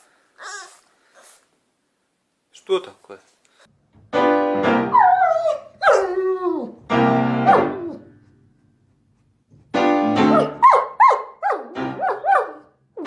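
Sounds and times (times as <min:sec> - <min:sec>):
piano notes: 0:03.7 - 0:13.0
dog howling: 0:04.9 - 0:06.8.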